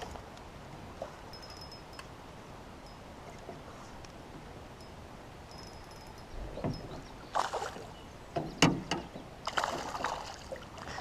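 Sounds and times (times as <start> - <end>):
sharp knocks in a boat: 8.3 - 10.2.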